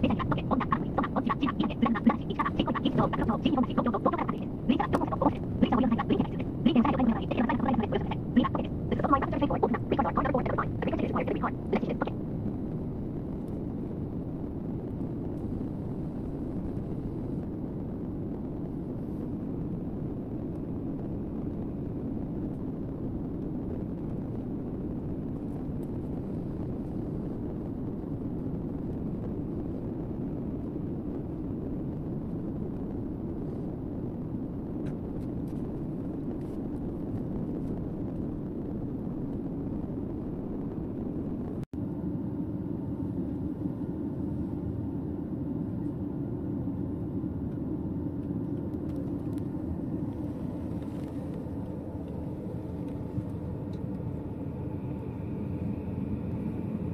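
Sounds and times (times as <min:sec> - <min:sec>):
steady low rumbling: 0:00.0 - 0:56.9.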